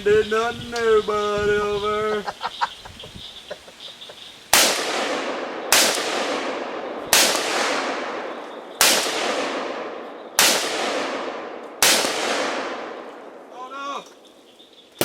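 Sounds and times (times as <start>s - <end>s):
gunshots with long echo: 4.5s - 13.6s.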